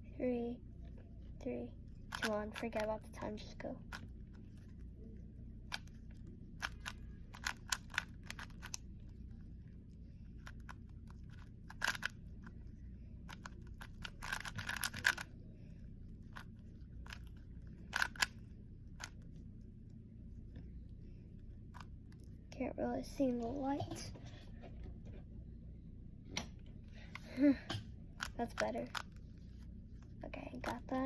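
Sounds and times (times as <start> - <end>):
puzzle cube clicking: 2.1 - 2.9, 5.7 - 8.8, 10.4 - 12.2, 13.3 - 15.3, 16.3 - 18.4, 28.2 - 29.2.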